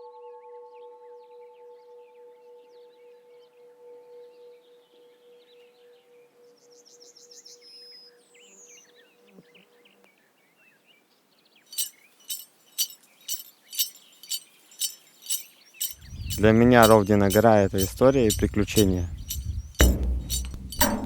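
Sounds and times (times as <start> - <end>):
sharp ringing clinks: 11.7 - 21.0
small birds chirping: 11.7 - 21.0
steady ringing tone: 11.8 - 21.0.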